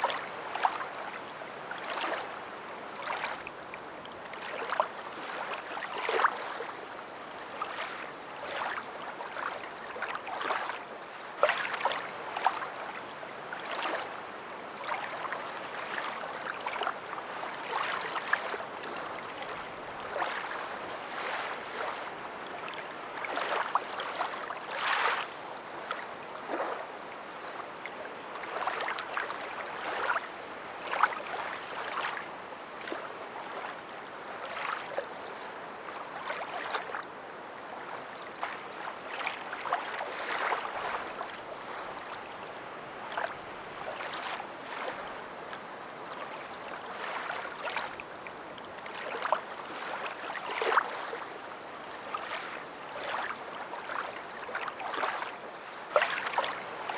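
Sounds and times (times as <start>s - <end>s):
water splashing and lapping: 38.4s - 42.2s, 43.1s - 45.2s, 46.1s - 51.2s, 51.8s - 56.9s.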